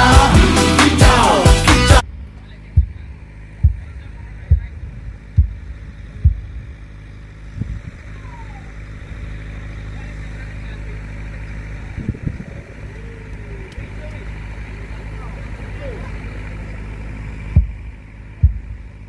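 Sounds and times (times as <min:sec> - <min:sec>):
loud dance music: 0:00.0 - 0:02.0
deep bass thumps: 0:00.0 - 0:06.9, 0:17.5 - 0:19.0
low rumble: 0:02.0 - 0:19.0.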